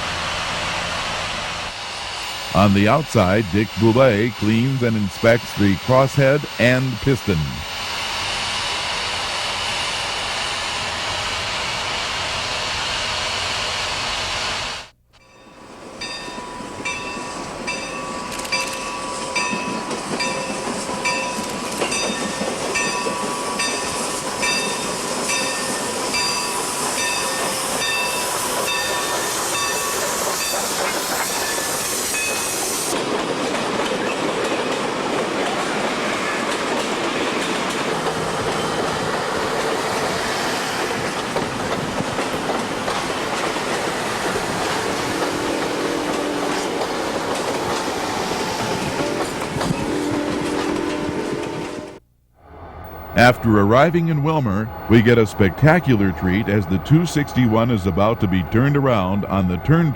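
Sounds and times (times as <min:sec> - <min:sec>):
steady rushing hiss: 0:01.6 - 0:14.9, 0:15.5 - 0:50.2
locomotive bell ringing: 0:15.2 - 0:32.4, 0:52.9 - 0:59.9
train wheels clacking over rail joints: 0:18.6 - 0:51.7.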